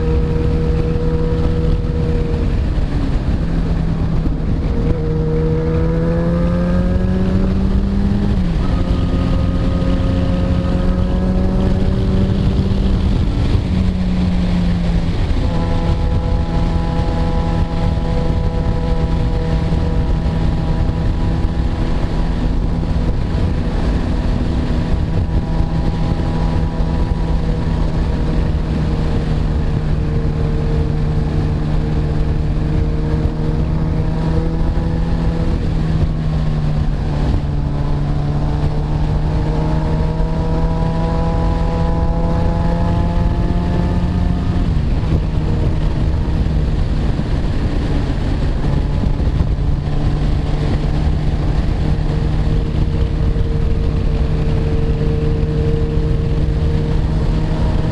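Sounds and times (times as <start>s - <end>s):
motorcycle engine cruising: 0.0s - 57.9s
wind rushing over microphone: 0.0s - 57.9s.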